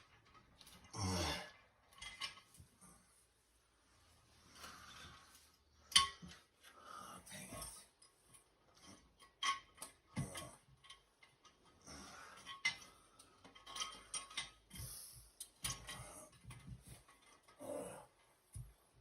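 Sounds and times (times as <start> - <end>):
porcelain clinks and scrapes: 12.2 - 14.9.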